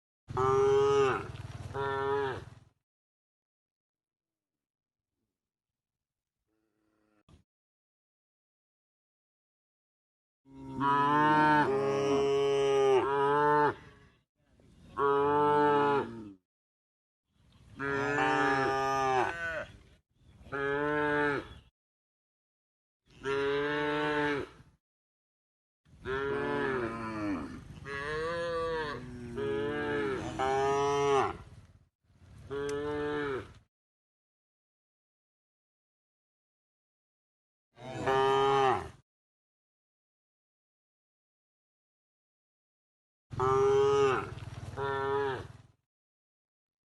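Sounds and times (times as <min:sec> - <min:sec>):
cow mooing: 0:00.3 - 0:02.5, 0:10.5 - 0:13.9, 0:15.0 - 0:16.4, 0:17.8 - 0:19.7, 0:20.5 - 0:21.6, 0:23.1 - 0:24.6, 0:26.0 - 0:31.4, 0:32.5 - 0:33.6, 0:37.8 - 0:39.0, 0:43.3 - 0:45.6.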